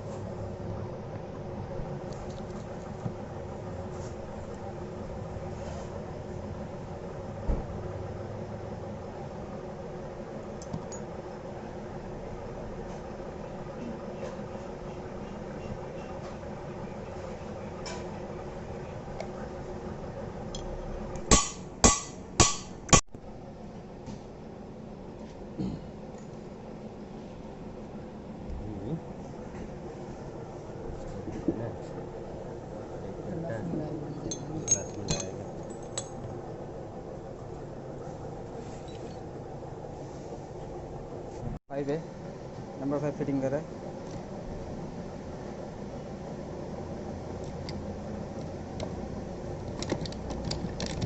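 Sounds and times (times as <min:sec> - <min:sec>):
hammer blows on metal: 0:21.3 - 0:23.0.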